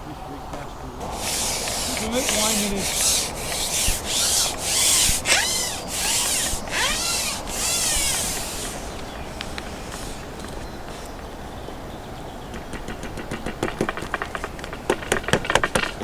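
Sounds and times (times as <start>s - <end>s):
rhythmic rubbing strokes: 1.0s - 10.4s.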